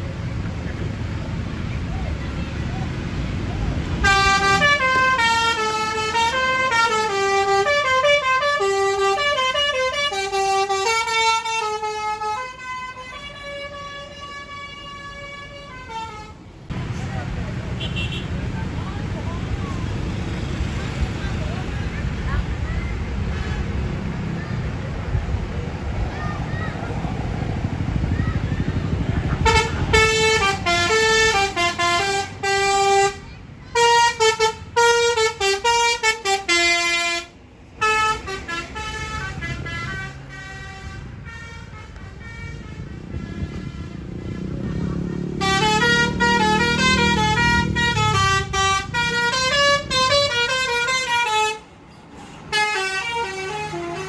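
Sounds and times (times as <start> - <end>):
bus engine rumbling: 0.0 - 54.0
bus horn playing tune: 3.8 - 16.6, 17.8 - 18.4, 29.2 - 51.8, 52.5 - 54.0.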